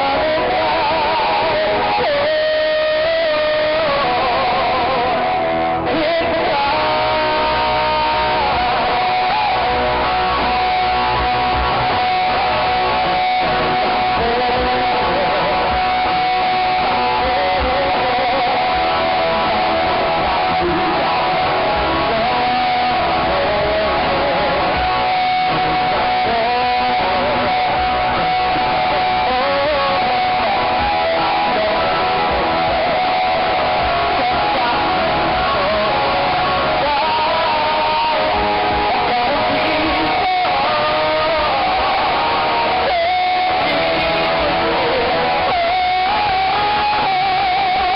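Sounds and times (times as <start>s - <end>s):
distorted live band music: 0.0s - 47.9s
electric guitar: 0.0s - 47.9s.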